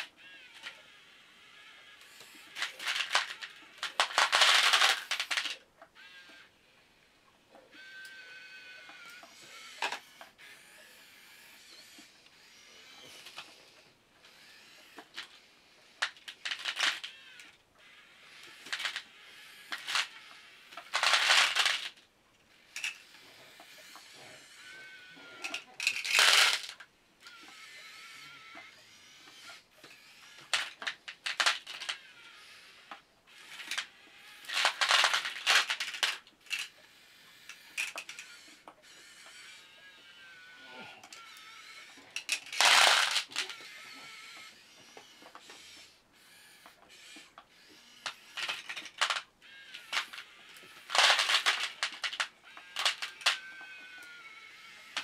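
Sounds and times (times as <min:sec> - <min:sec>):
plastic clicking and rattling: 0:00.0 - 0:00.8, 0:02.0 - 0:06.4, 0:08.9 - 0:10.4, 0:13.0 - 0:13.8, 0:14.8 - 0:22.1, 0:22.7 - 0:24.3, 0:25.4 - 0:27.6, 0:28.4 - 0:32.2, 0:32.9 - 0:36.8, 0:37.4 - 0:39.4, 0:41.0 - 0:45.9, 0:46.6 - 0:55.0
small gear motors whirring: 0:00.0 - 0:55.0.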